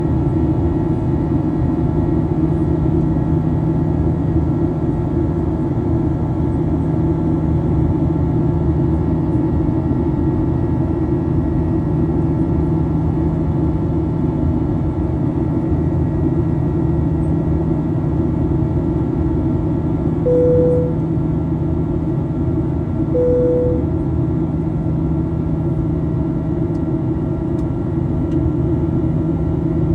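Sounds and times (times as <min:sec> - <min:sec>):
vehicle interior drone: 0:00.0 - 0:29.9
short beep: 0:20.3 - 0:21.0, 0:23.1 - 0:23.9.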